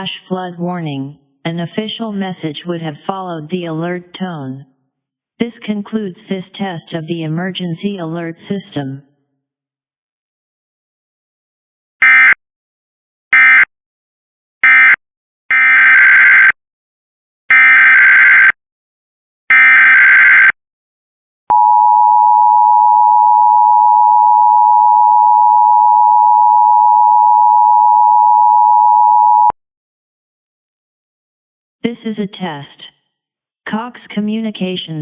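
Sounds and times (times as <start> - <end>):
two-tone attention signal: 21.5 - 29.5.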